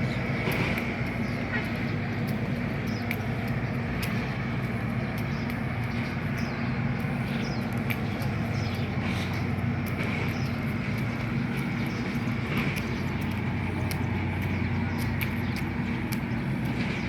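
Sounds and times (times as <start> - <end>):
vehicle engines rumbling: 0.0 - 17.0.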